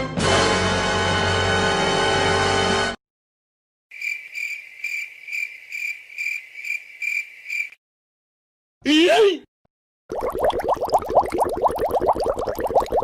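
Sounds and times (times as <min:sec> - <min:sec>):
cricket chirping: 0:03.9 - 0:07.8.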